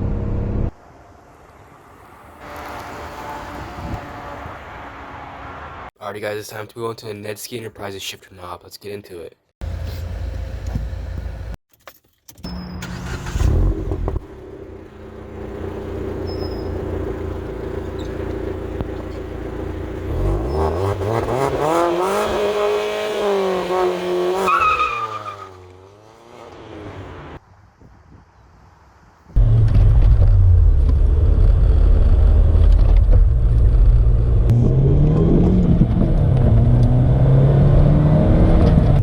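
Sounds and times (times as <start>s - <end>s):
car engine accelerating: 0.0s - 0.8s, 12.8s - 27.4s, 29.4s - 39.0s.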